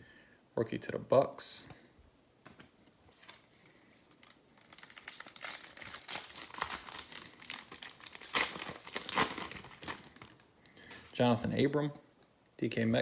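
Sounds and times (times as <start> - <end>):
plastic wrapper crinkling and tearing: 3.1 - 11.2.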